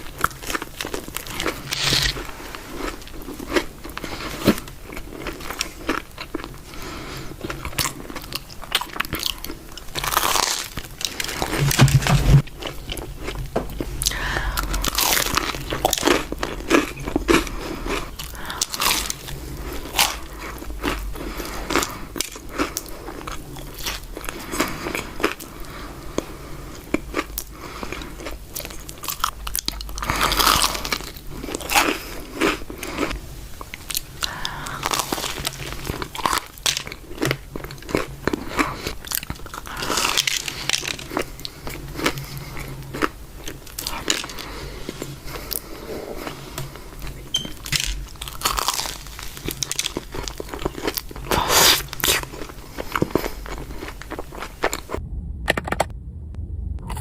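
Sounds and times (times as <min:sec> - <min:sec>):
crunchy biting and chewing: 0:00.0 - 0:55.0.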